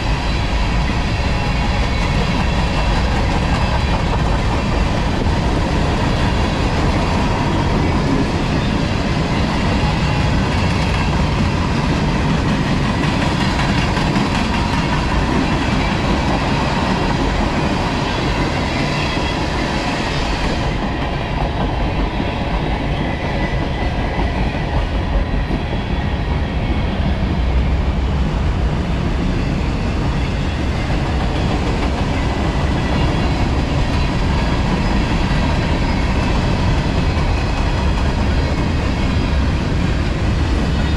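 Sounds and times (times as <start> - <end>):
train wheels clattering over rail joints: 9.4 - 17.9.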